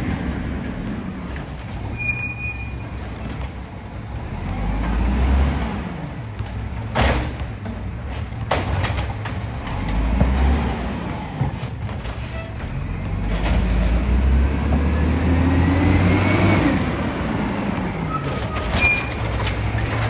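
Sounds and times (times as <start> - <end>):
garbage truck diesel engine revving: 4.1 - 6.3, 9.4 - 11.8, 12.6 - 20.0.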